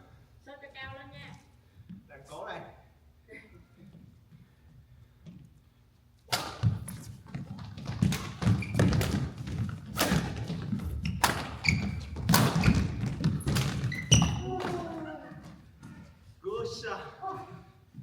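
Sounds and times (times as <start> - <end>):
racket hitting shuttlecock: 6.3 - 7.1, 7.8 - 14.9
heavy footfalls on court floor: 6.4 - 16.1
shoe squeaks: 6.6 - 15.4.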